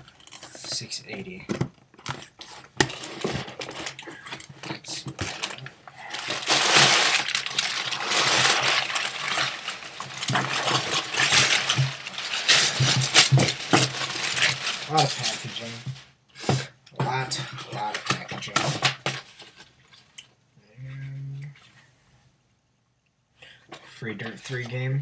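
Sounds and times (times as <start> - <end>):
packaging crinkling and rustling: 0.0 - 20.2
packaging clicks and knocks: 0.2 - 16.7.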